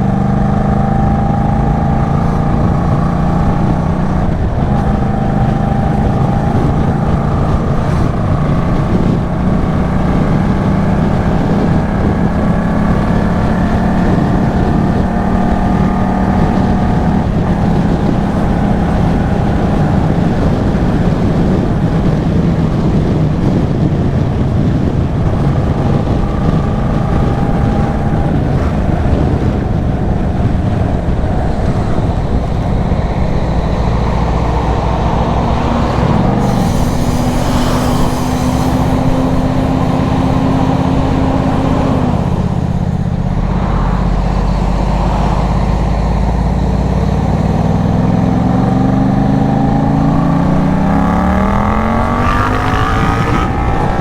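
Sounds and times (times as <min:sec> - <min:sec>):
motorcycle engine running: 0:00.0 - 0:54.0
wind rumbling on microphone: 0:00.0 - 0:54.0.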